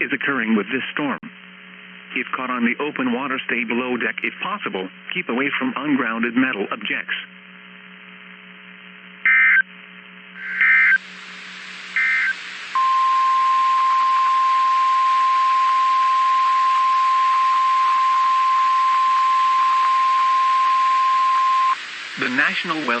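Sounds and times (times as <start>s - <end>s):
radio hiss: 0.0s - 8.4s, 9.2s - 23.0s
digital data bursts: 9.3s - 9.6s, 10.4s - 11.0s, 11.9s - 14.8s, 18.5s - 23.0s
warning alarm tone: 10.4s - 11.0s, 11.9s - 22.5s.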